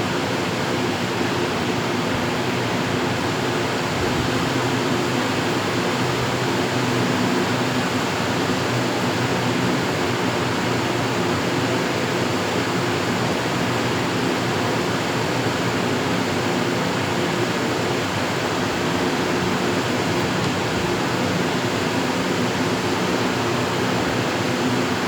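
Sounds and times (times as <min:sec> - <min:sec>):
machinery humming: 0:17.4 - 0:25.0.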